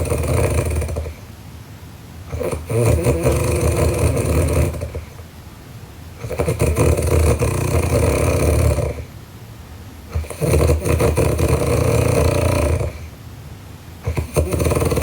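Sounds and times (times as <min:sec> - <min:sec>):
girl snoring loudly: 0:00.0 - 0:01.2, 0:02.3 - 0:05.2, 0:06.2 - 0:09.1, 0:10.1 - 0:13.1, 0:14.1 - 0:15.0.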